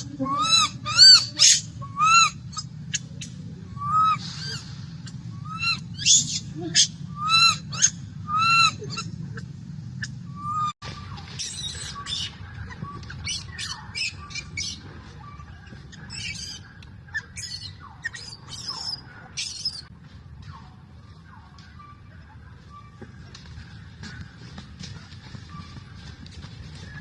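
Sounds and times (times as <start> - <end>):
baby monkey crying: 0.0 - 2.8, 3.8 - 4.6, 5.4 - 9.2, 11.4 - 16.6.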